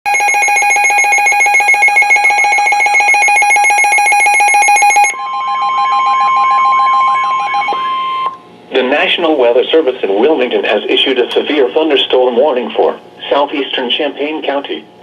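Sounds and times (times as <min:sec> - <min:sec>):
pulsing electronic alarm beep: 0:00.1 - 0:08.4
steady warning alarm tone: 0:00.1 - 0:09.2.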